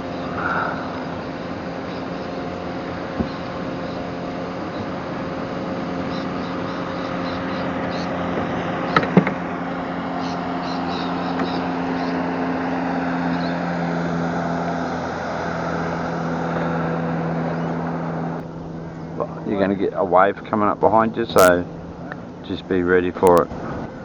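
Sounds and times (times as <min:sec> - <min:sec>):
motorboat engine humming: 0:00.0 - 0:24.0
wash of noise: 0:00.0 - 0:24.0
sharp knocks: 0:08.3 - 0:09.4.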